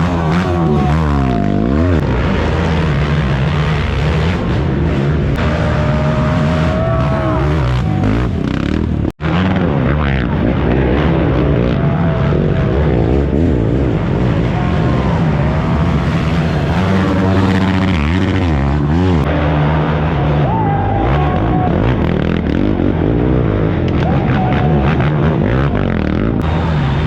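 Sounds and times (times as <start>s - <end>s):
racing atv engines revving: 0.0s - 27.0s.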